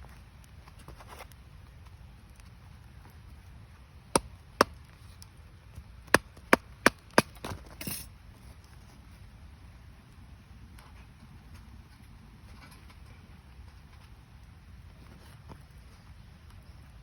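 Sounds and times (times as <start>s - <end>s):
firewood cracking: 3.7s - 7.8s.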